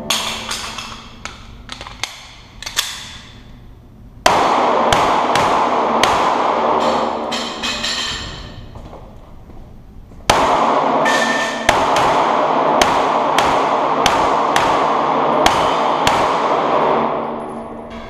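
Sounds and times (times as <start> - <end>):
pistol shots echoing indoors: 4.2 - 8.7, 10.2 - 18.0.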